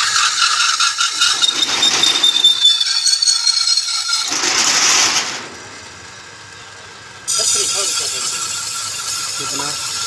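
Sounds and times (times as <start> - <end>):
metalworking hiss with high whine: 7.3 - 10.0.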